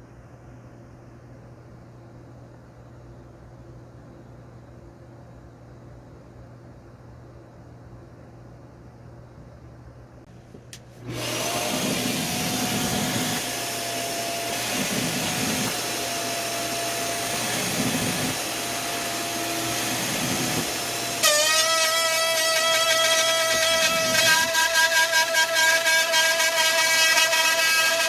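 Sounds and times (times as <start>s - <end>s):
power tool cutting wood: 11.0s - 28.0s.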